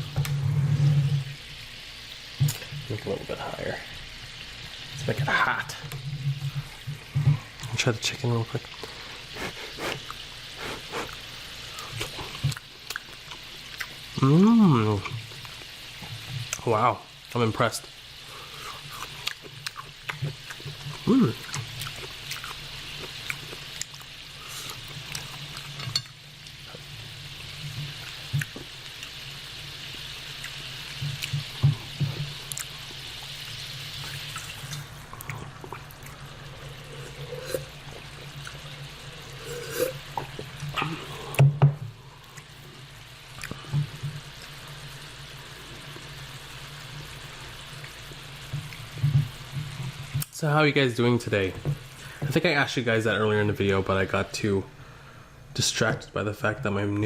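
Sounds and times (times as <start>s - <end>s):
noodles sizzling in skillet: 0.0s - 57.0s
eating sounds: 8.6s - 14.0s, 18.5s - 26.6s, 32.4s - 33.3s, 34.0s - 41.4s, 43.3s - 43.7s.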